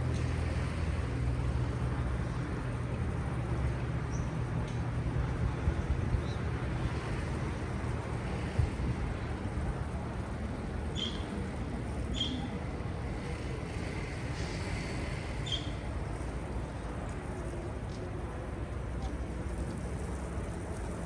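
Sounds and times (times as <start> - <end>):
low rumble of road traffic: 0.0 - 21.0
parakeets chirping: 11.0 - 11.2.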